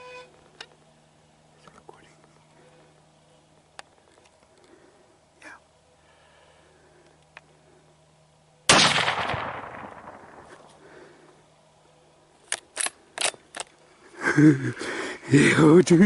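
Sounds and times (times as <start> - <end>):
rifle shot echoing: 8.7 - 10.7.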